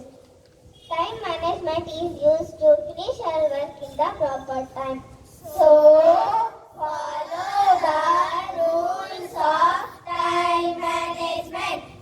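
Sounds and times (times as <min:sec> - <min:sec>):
young children singing: 0:05.5 - 0:12.0.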